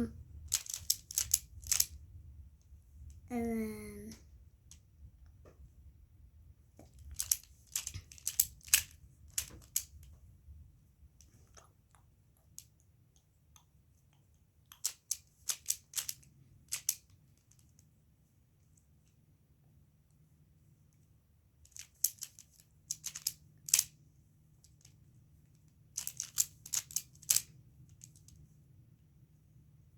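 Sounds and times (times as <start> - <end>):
twisty puzzle plastic clicks: 0.5 - 1.9, 7.0 - 10.0, 14.7 - 17.6, 21.7 - 23.9, 26.0 - 28.2.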